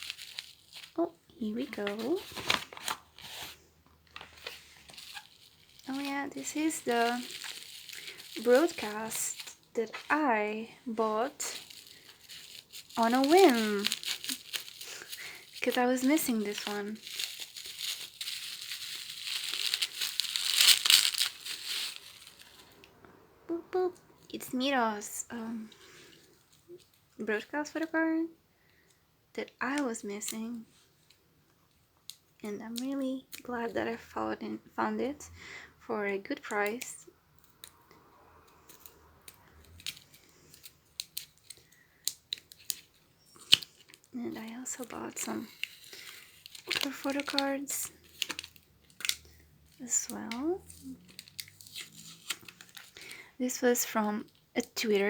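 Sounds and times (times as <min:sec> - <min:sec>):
plastic packaging crinkling: 0:00.0 - 0:22.9, 0:38.7 - 0:53.3.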